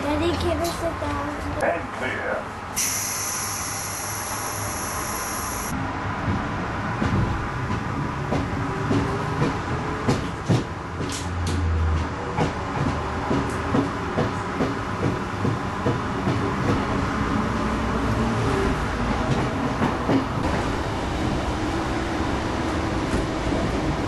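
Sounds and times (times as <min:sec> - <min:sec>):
train rumbling inside carriage: 0:00.0 - 0:24.0.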